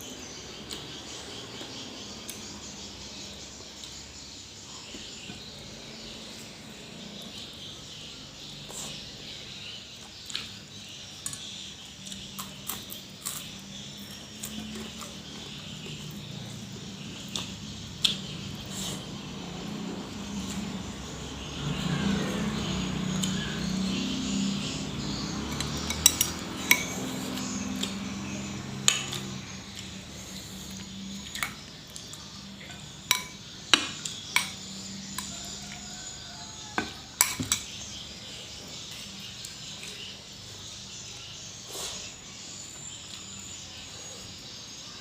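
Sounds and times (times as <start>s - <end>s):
cutlery clinking against a plate: 25.5s - 27.9s, 33.1s - 35.3s, 36.8s - 37.8s.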